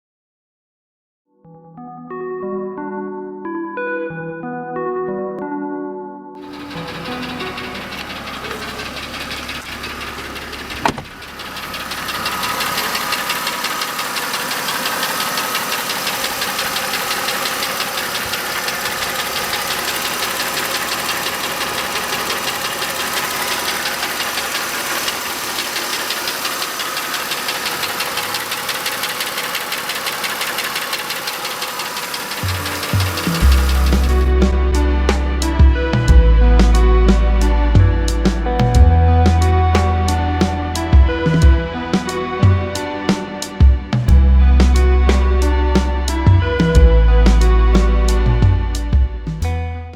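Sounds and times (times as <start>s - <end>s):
engine running with rapid knock: 6.4s - 40.2s.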